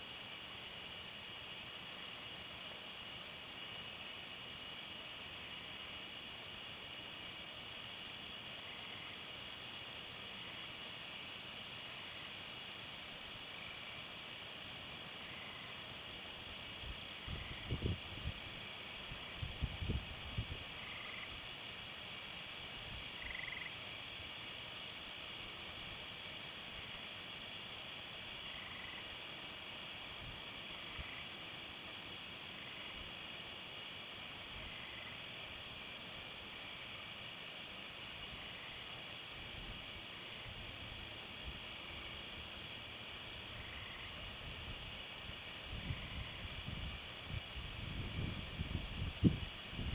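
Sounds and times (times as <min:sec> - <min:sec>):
crickets and insects chorus: 0:00.0 - 0:49.9.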